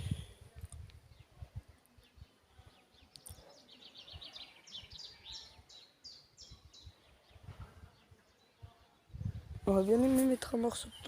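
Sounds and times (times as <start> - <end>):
low rumble on microphone: 0.0 - 1.7, 9.1 - 10.3
songbird singing: 0.0 - 11.0.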